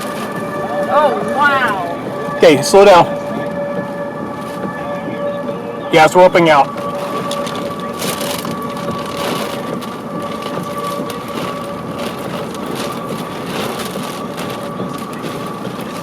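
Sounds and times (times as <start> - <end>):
faint high tone: 0.0 - 8.8
wind and rain through car window: 0.0 - 16.0
wind buffeting microphone: 0.0 - 16.0.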